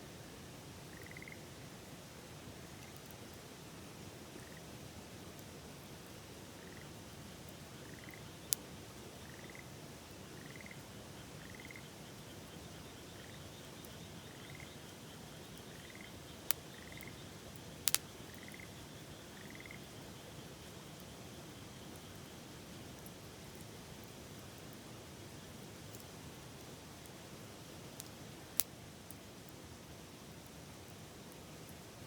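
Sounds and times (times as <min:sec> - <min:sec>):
campfire pops: 0:17.8 - 0:18.2.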